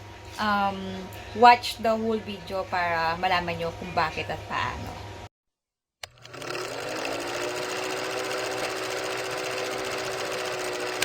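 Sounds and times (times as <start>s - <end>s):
small motorised machine rattling: 6.0s - 11.0s.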